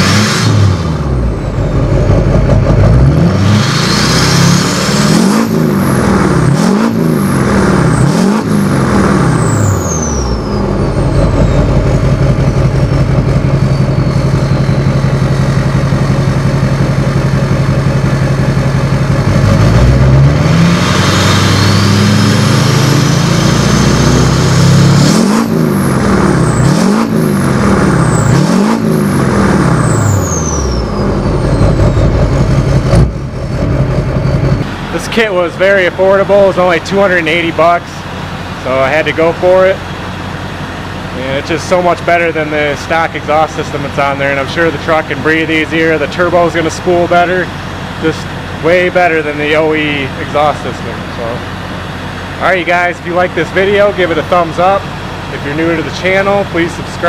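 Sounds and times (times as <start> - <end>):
diesel engine revving: 0.0 - 57.0
turbo whistle: 9.3 - 15.4, 20.8 - 24.2, 27.9 - 32.5.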